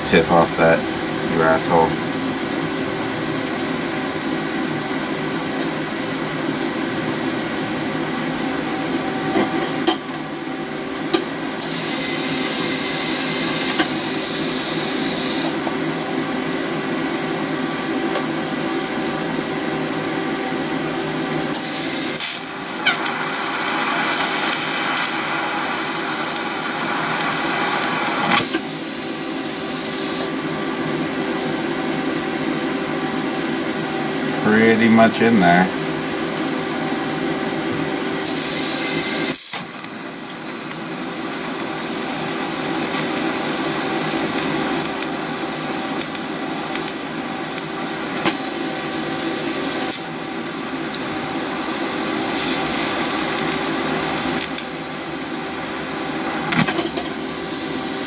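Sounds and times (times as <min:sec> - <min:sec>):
steady background hum: 0:00.0 - 0:58.0
welding arc hissing: 0:11.6 - 0:15.6, 0:21.5 - 0:30.3, 0:38.3 - 0:58.0.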